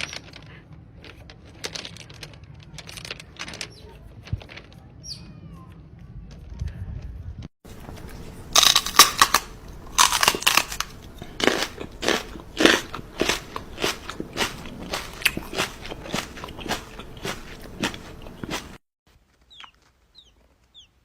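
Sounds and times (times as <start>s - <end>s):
rhythmic crunching: 7.7s - 18.8s.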